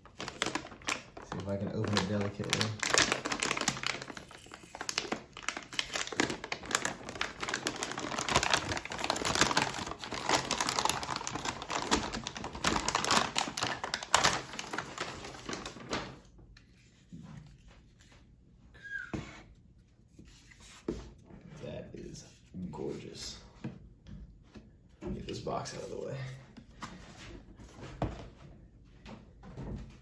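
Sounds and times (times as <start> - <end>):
packaging crinkling: 0.0 - 16.3.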